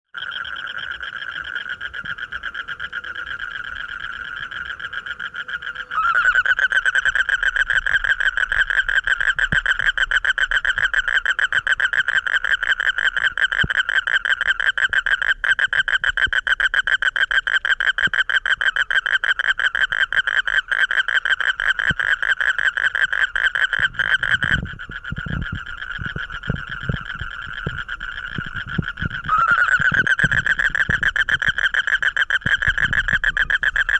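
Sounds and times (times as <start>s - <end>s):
frog pulsed trill: 0.1s - 33.9s
low thumps: 23.7s - 33.9s.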